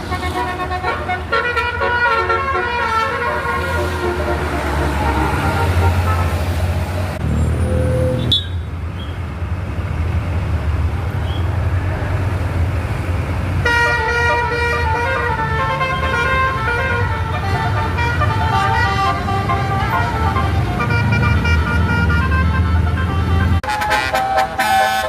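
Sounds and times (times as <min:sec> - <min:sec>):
air horn playing a tune: 0:00.0 - 0:06.7, 0:13.6 - 0:25.0
bus engine rumbling: 0:00.0 - 0:25.0.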